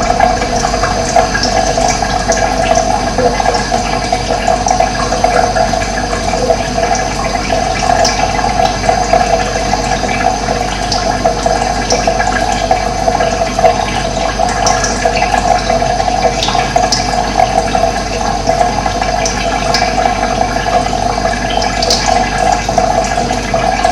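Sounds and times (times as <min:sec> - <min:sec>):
water rushing: 0:00.0 - 0:15.2.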